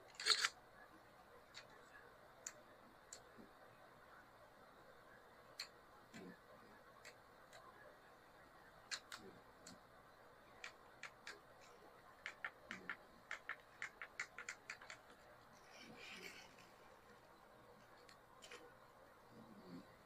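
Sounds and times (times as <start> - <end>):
small parts clicking and tapping: 0.0 - 0.6, 8.9 - 9.8, 10.6 - 15.3.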